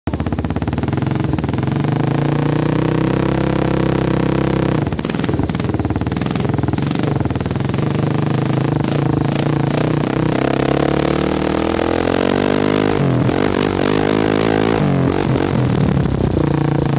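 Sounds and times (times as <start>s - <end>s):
atv engine running: 0.1s - 16.9s
exhaust crackling and popping: 0.1s - 16.9s.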